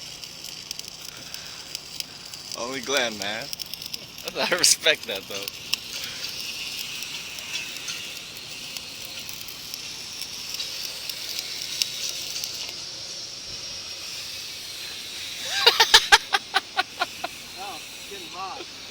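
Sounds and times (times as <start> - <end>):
welding arc crackling hiss: 0.0 - 18.9.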